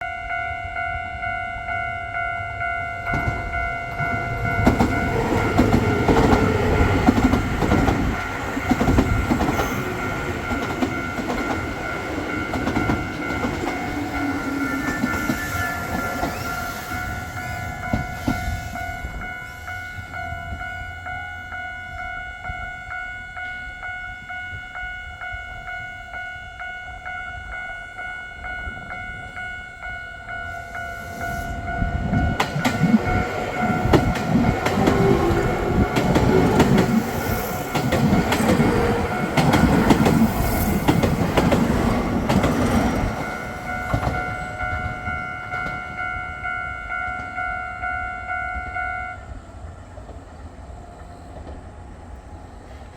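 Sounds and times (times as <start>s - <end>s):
electric train passing: 0.0s - 52.9s
level crossing bell ringing: 28.6s - 48.8s.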